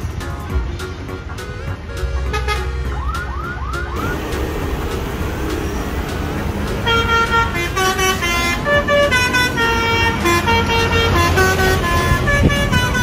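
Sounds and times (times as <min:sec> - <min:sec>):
train horn playing stepped notes: 0:01.5 - 0:03.2, 0:04.0 - 0:13.0
low rumble: 0:03.9 - 0:07.8.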